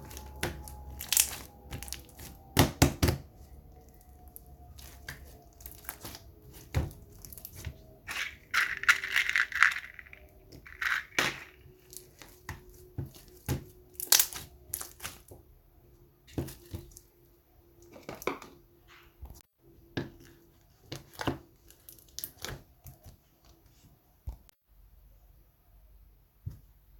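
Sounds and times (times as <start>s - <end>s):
crackling slime squish: 0.0s - 15.4s, 20.5s - 23.2s
slime clicking and popping: 0.1s - 3.1s, 14.0s - 15.2s.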